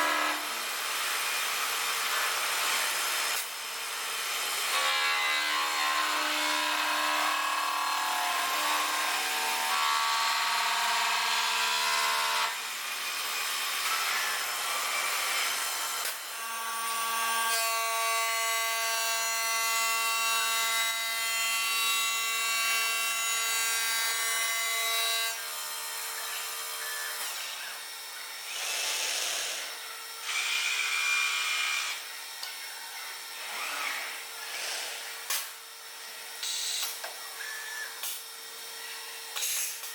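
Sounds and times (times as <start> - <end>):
machine tool whine: 21.8 - 39.9
hiss and rasp of stone cutting: 28.4 - 31.9, 33.6 - 35.5.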